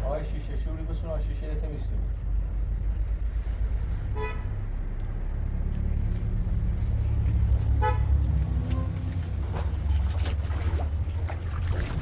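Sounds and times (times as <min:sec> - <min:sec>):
car engine and road rumble: 0:00.0 - 0:12.0
car horn toot: 0:07.8 - 0:08.1.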